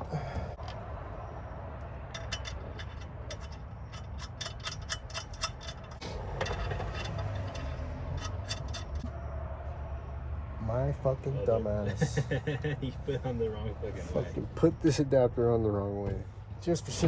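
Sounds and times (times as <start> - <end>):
steady low hum: 0.0 - 17.0
hand tools clicking on metal: 2.0 - 9.1.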